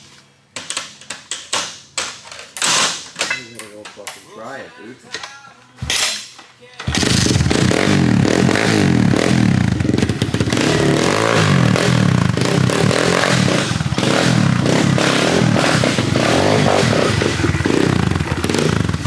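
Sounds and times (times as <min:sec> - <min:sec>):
small motorcycle engine revving: 0:06.8 - 0:19.0.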